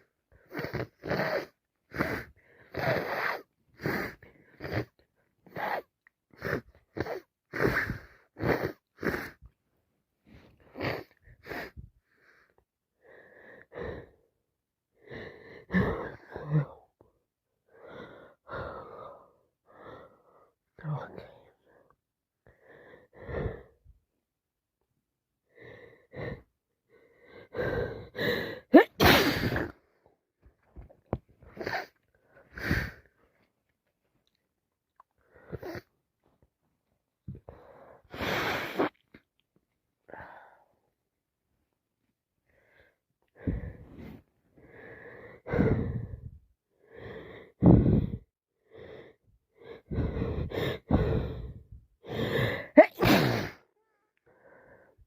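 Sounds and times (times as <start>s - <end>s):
person sneezing: 28.7s - 29.8s, 52.7s - 53.7s
hitching breaths: 42.5s - 53.6s.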